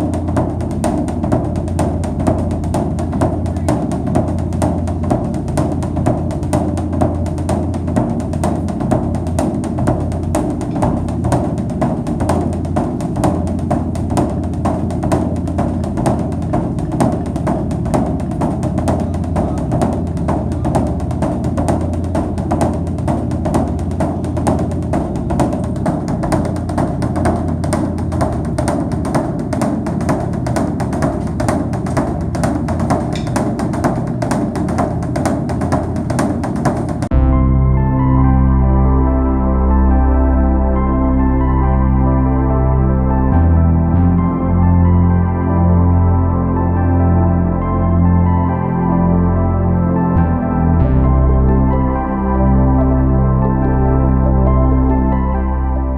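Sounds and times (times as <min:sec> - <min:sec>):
fast drum beat: 0:00.0 - 0:37.2
bass line: 0:00.0 - 0:55.9.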